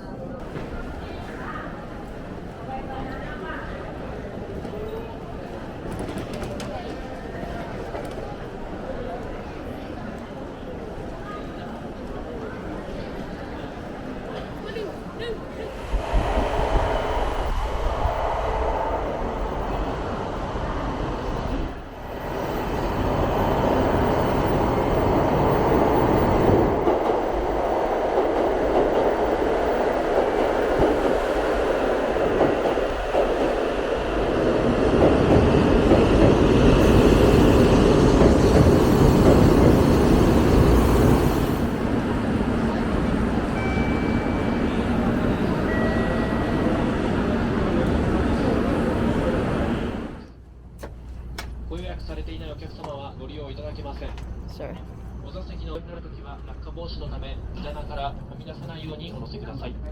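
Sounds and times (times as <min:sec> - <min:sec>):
train rushing: 0:10.8 - 0:50.4.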